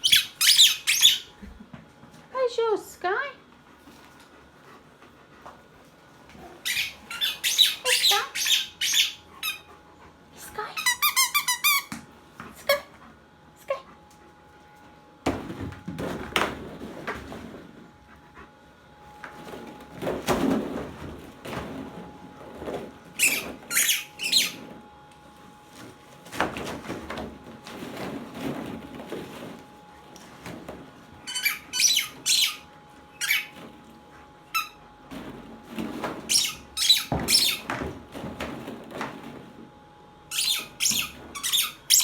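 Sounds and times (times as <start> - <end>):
squeaky dog ball squeaks: 0.0 - 1.3, 6.6 - 9.6, 10.8 - 11.9, 23.2 - 24.6, 31.2 - 33.6, 36.3 - 37.7, 40.3 - 42.0.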